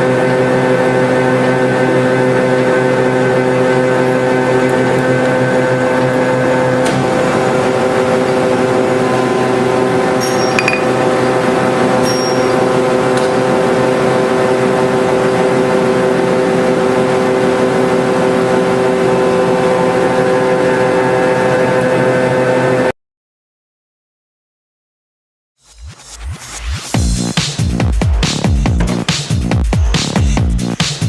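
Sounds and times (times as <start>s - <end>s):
machine motor humming: 0.0s - 22.8s.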